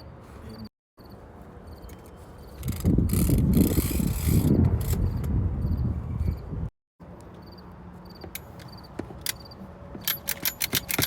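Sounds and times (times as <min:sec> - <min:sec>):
ratchet strap clicking: 0:02.6 - 0:05.2, 0:10.0 - 0:11.0.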